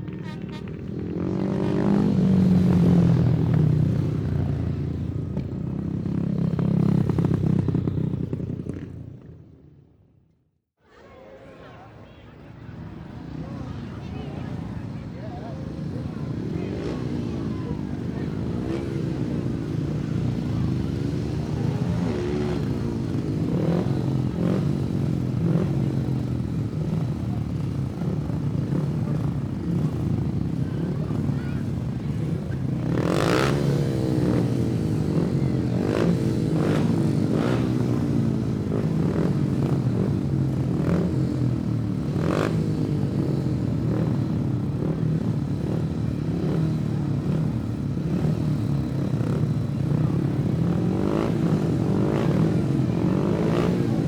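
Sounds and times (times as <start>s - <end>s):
racing engines revving: 12.8s - 54.0s.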